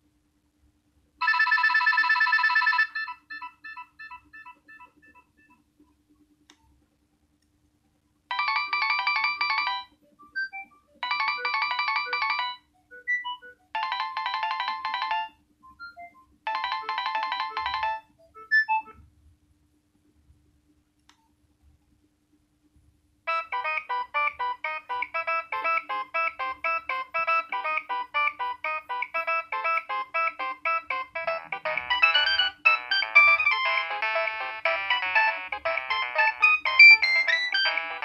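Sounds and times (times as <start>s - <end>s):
fast electronic ringtone trill: 1.2s - 5.3s, 8.3s - 18.8s, 23.3s - 38.0s
rapid ringtone beeping: 1.2s - 5.3s, 8.3s - 18.8s, 23.3s - 38.0s.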